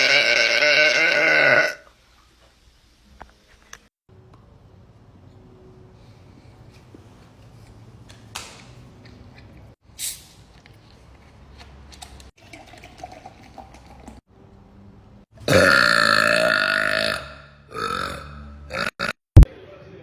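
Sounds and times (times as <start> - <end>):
girl burping loudly: 0.0 - 1.9, 15.4 - 19.2.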